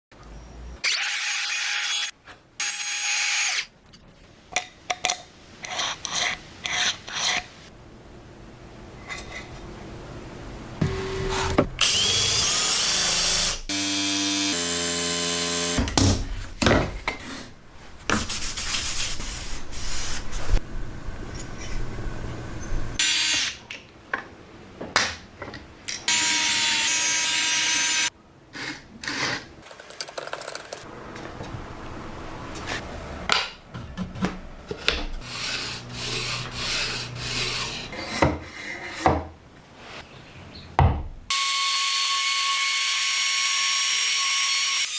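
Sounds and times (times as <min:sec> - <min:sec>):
router bit cutting wood: 0:10.8 - 0:15.8
router motor whine: 0:10.8 - 0:15.8.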